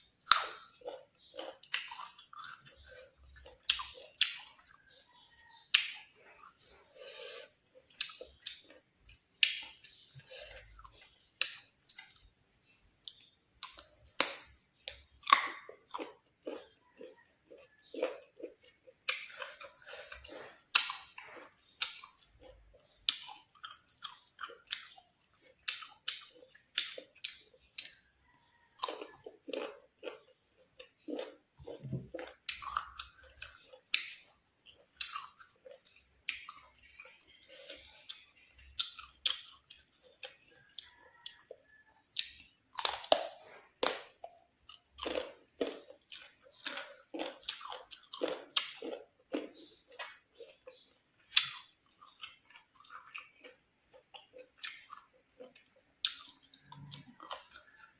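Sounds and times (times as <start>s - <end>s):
chewing and crunching mango: 0.0s - 12.4s, 13.0s - 57.9s.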